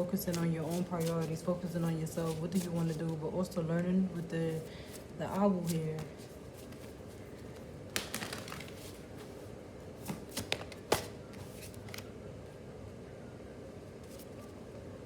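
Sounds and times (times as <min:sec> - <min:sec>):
cards tapping and clicking: 0:07.9 - 0:09.0, 0:10.0 - 0:12.1.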